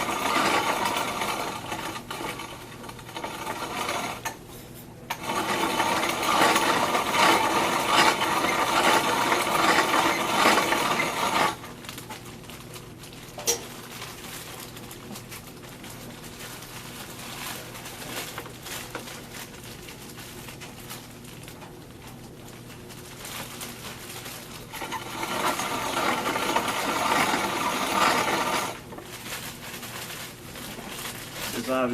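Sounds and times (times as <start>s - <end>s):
grain mill crushing grain: 0.0s - 4.4s, 5.1s - 12.8s, 23.0s - 31.9s.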